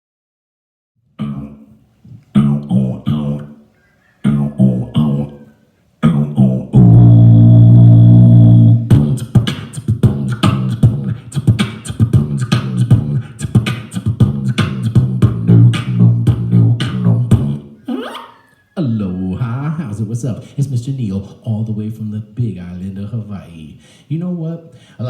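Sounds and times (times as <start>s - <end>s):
beatboxing: 1.2s - 3.6s, 6.0s - 18.6s.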